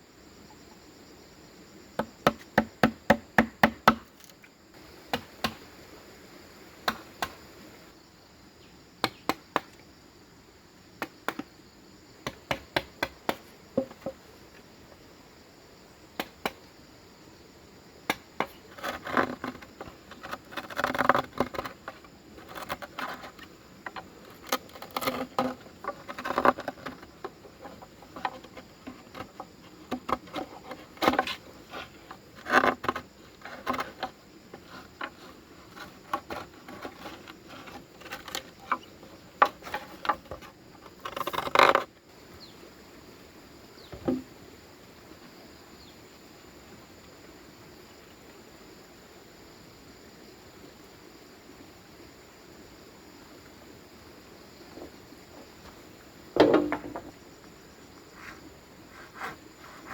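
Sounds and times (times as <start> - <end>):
high insect drone: 0.0 - 59.9
tool knocking on bamboo: 2.0 - 4.1, 56.4 - 57.1.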